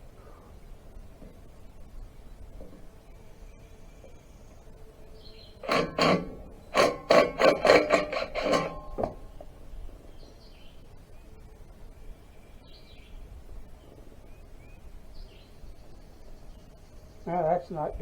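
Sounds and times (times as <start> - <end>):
hand tools knocking on metal: 5.6 - 9.5.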